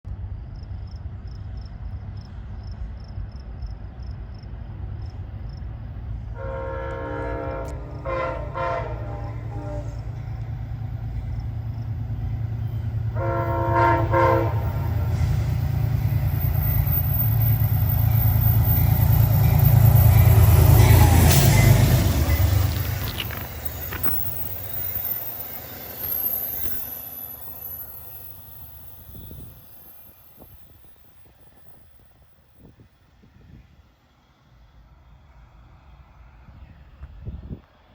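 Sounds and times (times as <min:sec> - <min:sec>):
locomotive engine rumble: 0:00.2 - 0:37.9
locomotive air horn blasts: 0:06.3 - 0:10.3, 0:13.1 - 0:15.6.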